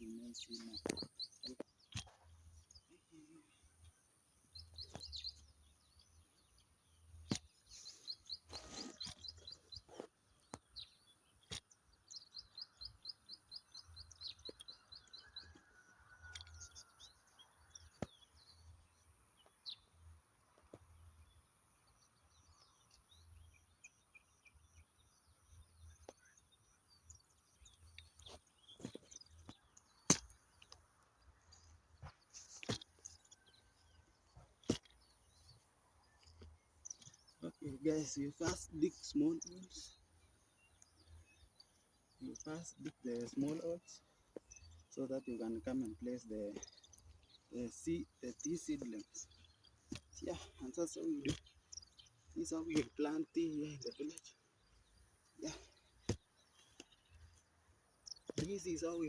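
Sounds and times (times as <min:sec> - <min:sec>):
bird chirps: 0:00.0 - 0:59.0
birds trilling: 0:36.8 - 0:57.2.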